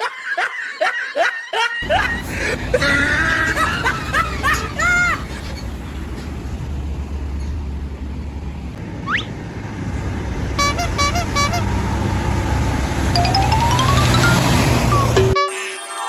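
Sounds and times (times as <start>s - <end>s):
vehicle engine rumbling: 1.8s - 15.4s
rising tone: 13.1s - 15.4s.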